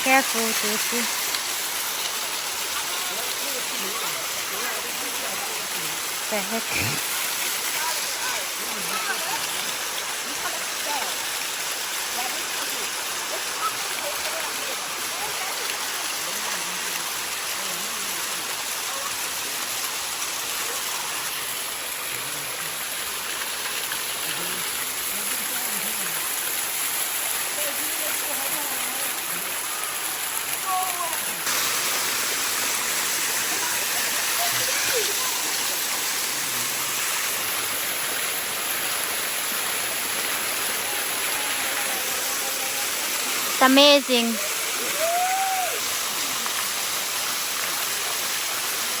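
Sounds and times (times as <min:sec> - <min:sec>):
water rushing down cascades: 0:00.0 - 0:49.0
faint voices: 0:24.2 - 0:46.0.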